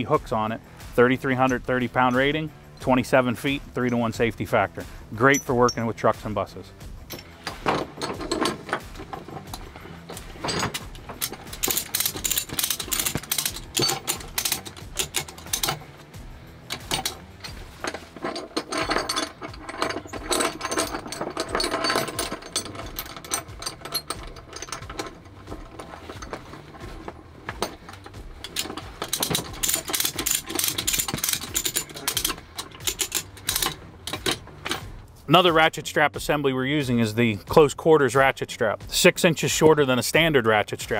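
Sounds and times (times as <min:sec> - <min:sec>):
ratchet strap clicking: 0:07.0 - 0:35.2.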